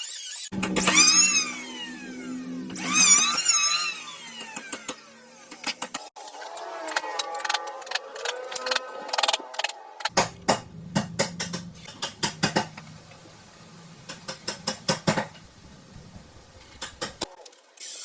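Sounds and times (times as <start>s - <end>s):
low steady hum: 0.6s - 4.5s, 10.0s - 17.2s
sharp clicks and knocks: 10.0s - 17.3s.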